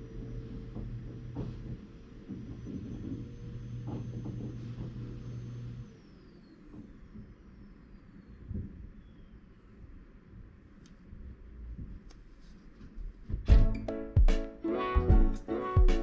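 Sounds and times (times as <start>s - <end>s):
muffled vacuum cleaner running: 0.0s - 6.9s.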